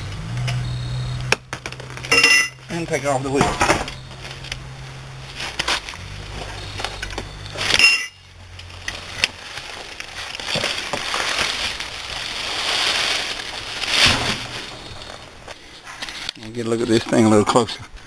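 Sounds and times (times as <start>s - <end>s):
scraping and rustling: 1.6s - 17.4s
metal clank: 2.1s - 2.6s.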